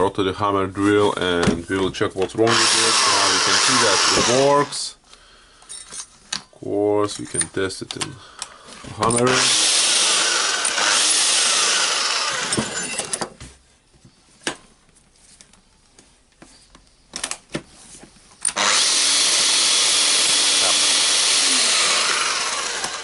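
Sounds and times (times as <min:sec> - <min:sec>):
rotary hammer motor running: 0:02.5 - 0:04.7, 0:09.3 - 0:13.2, 0:18.5 - 0:23.0.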